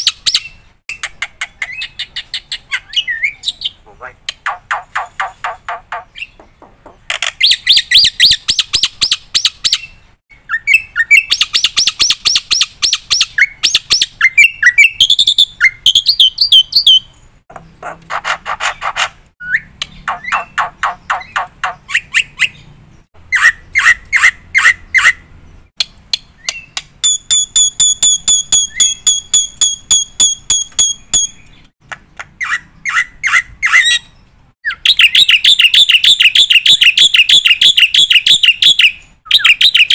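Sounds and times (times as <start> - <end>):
bird harsh chattering song: 0.0 - 39.9
bird whistled notes: 26.4 - 31.7.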